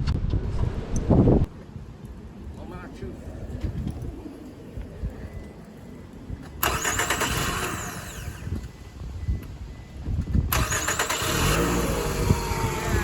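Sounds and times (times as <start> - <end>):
starter motor cranking engine: 6.6 - 8.6, 10.5 - 13.0.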